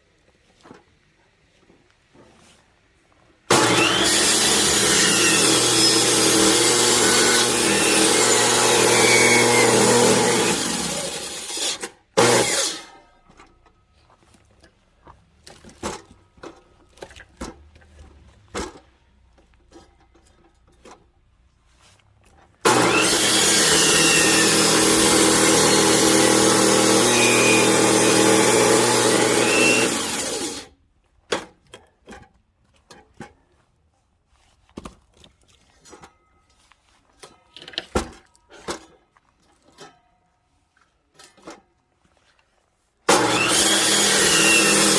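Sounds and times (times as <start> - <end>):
chainsaw cutting logs: 3.5 - 13.0, 22.6 - 30.7, 43.1 - 44.9.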